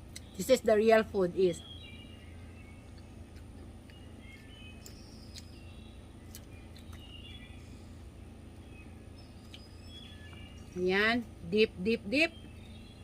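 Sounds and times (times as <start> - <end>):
steady low hum: 0.0 - 13.0
faint bird chirps: 0.1 - 11.3, 11.9 - 13.0.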